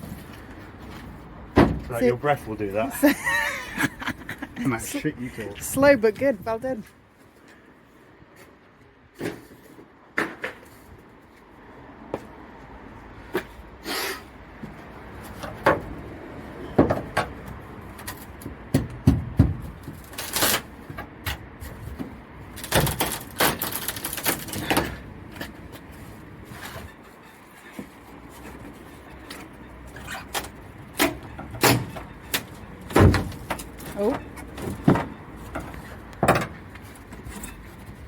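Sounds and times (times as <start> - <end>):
plywood scraping and banging: 0.0 - 2.2, 14.6 - 38.0
wood knocking and clunking: 18.3 - 20.1, 31.0 - 37.4.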